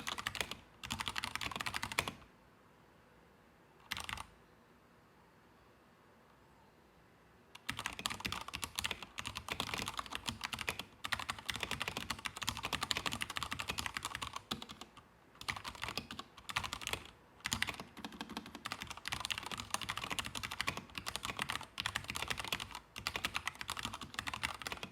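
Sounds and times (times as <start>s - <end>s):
mechanical keyboard typing: 0.0s - 2.2s, 3.8s - 4.3s, 7.6s - 24.9s.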